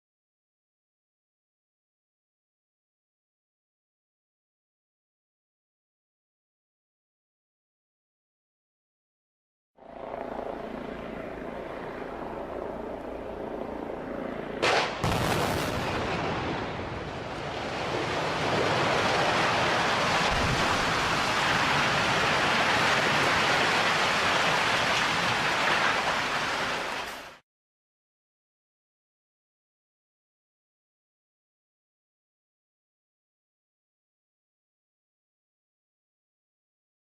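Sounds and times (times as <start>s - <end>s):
sharp demolition blast: 14.6s - 22.9s
rumble of building collapsing: 15.0s - 27.3s.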